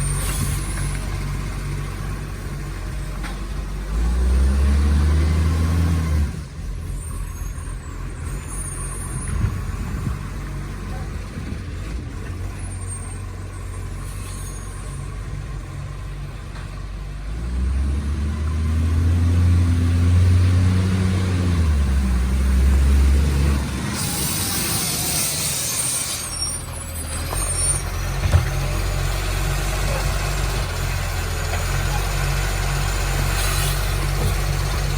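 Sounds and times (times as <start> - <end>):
diesel truck engine revving: 0.0 - 34.9
air release hiss: 23.8 - 26.7.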